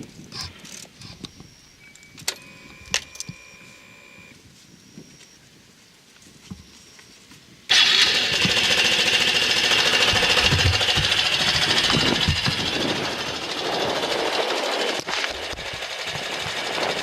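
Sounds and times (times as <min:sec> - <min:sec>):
motorcycle engine idling: 0:07.7 - 0:17.0.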